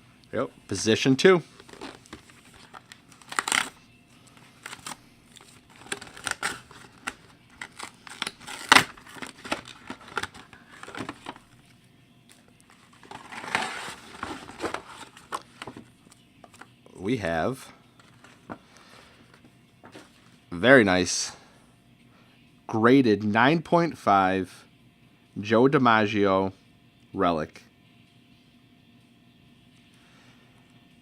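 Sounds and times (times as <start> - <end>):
packaging crinkling: 1.6 - 11.5, 12.7 - 15.8.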